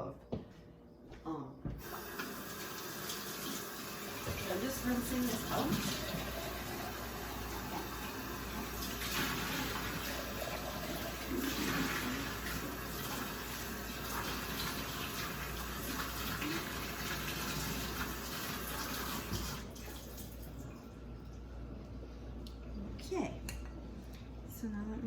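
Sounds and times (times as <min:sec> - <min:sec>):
kitchen tap running: 0:01.8 - 0:21.3
glass carafe being rinsed: 0:01.9 - 0:20.9.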